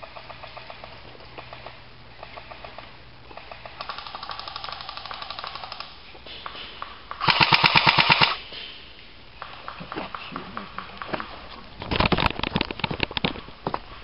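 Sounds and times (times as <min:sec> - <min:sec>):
airsoft guns firing full auto: 0:00.0 - 0:08.4.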